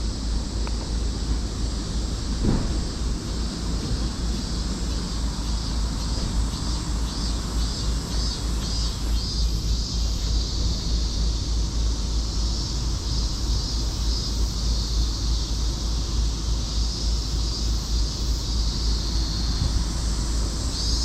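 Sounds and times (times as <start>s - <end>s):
cicadas singing: 0.0s - 21.0s
wind rumble on microphone: 19.4s - 21.0s.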